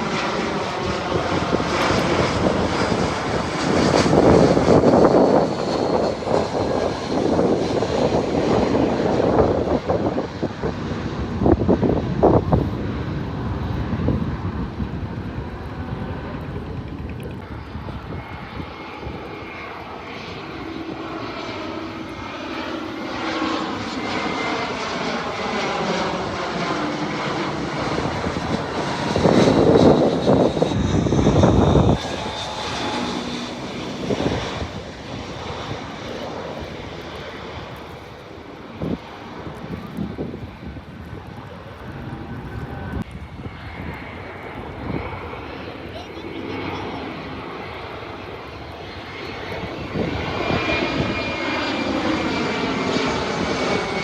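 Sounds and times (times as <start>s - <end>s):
jet airliner flying overhead: 0.0s - 54.0s.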